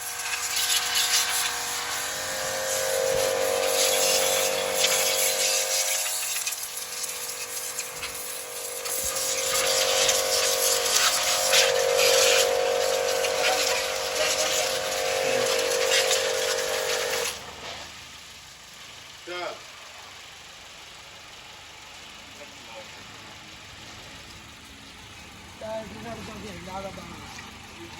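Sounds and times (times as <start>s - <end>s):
small electric motor running: 0.0s - 17.9s.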